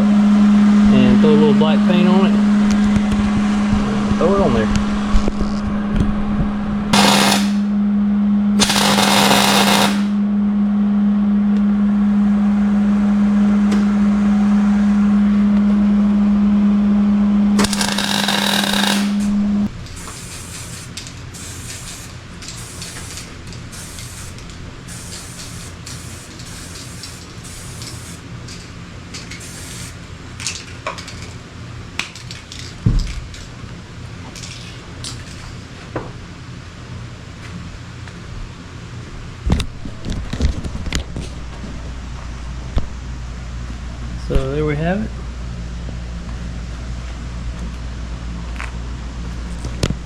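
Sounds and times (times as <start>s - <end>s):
constant hum: 0.0s - 50.0s
welding crackling hiss: 7.0s - 7.6s, 8.6s - 10.2s, 17.6s - 28.3s, 29.2s - 30.0s
aerosol spray paint burst: 20.0s - 28.2s, 29.4s - 30.0s.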